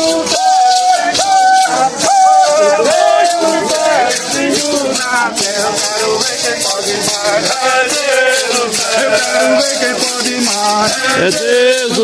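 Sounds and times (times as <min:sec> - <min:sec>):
maracas shaking: 0:00.0 - 0:12.0
voices singing a chant: 0:00.0 - 0:12.0.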